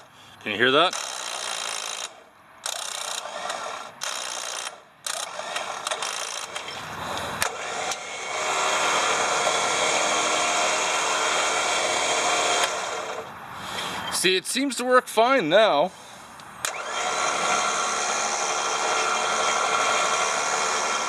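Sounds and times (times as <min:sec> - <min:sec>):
electric winch motor running: 0:00.9 - 0:13.3, 0:16.6 - 0:21.0.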